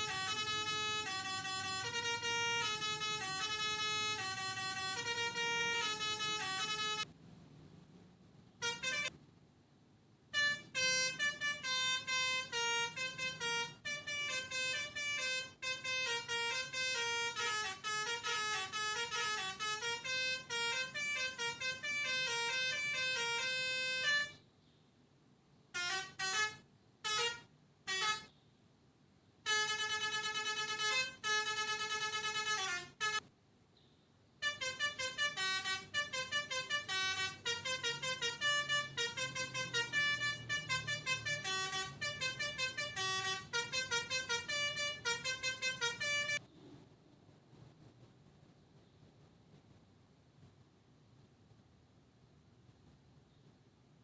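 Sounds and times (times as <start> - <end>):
melodica playing short reedy notes: 0.0 - 7.1, 8.6 - 9.2, 10.4 - 24.4, 25.8 - 28.4, 29.4 - 33.3, 34.4 - 46.5.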